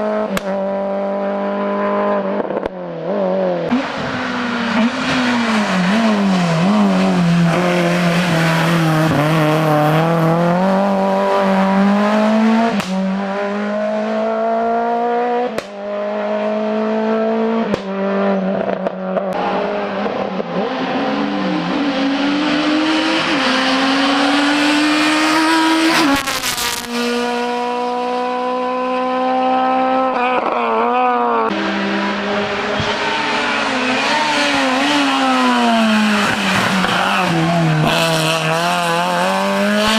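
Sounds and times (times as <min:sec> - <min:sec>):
race car engines at full throttle: 0:00.0 - 0:39.9.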